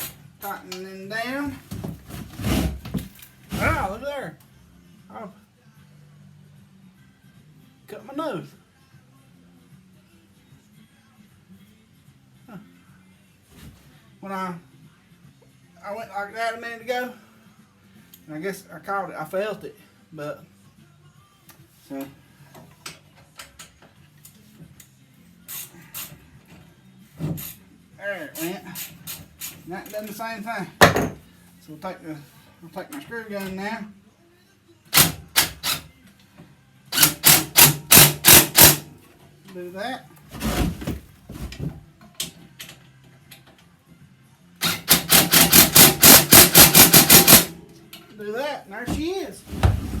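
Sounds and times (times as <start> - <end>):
hand ratchet clicking: 25.5 - 26.2, 28.8 - 30.0, 37.0 - 38.8, 44.6 - 47.5
loud knock: 30.8 - 31.2
power screw gun hammering: 34.9 - 35.8, 37.0 - 38.8, 44.6 - 47.5.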